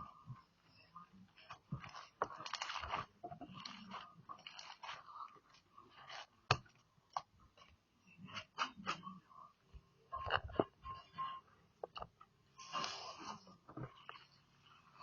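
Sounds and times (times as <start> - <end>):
slime squishing and popping: 1.8 - 5.0.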